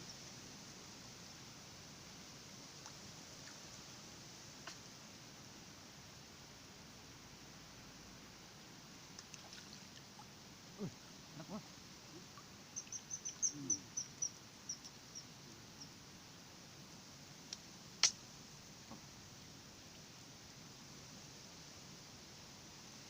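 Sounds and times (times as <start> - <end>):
lower bird calls: 10.8 - 15.9
bird chirping: 11.4 - 16.0
sharp click: 17.5 - 18.2.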